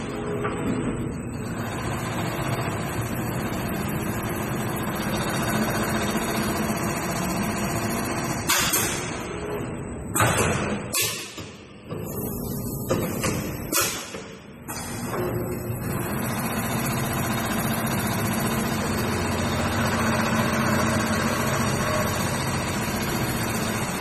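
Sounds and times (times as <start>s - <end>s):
sewing machine running: 1.4s - 8.4s, 15.8s - 24.0s.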